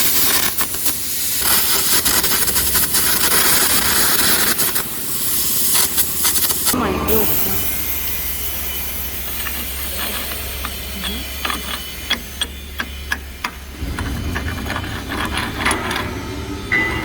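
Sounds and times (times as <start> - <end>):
steady low hum: 2.5 - 17.0
low rumbling noise: 6.8 - 17.0
sharp metallic clicks and knocks: 9.2 - 17.0.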